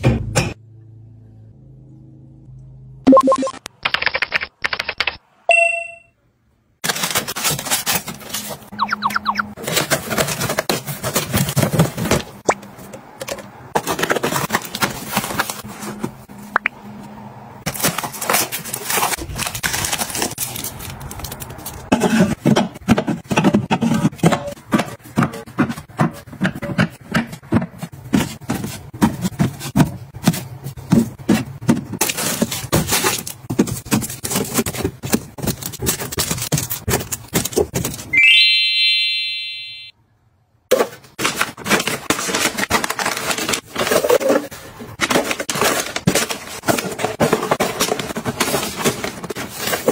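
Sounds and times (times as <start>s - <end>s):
short high beep: 5.5s - 6.1s, 38.2s - 39.9s.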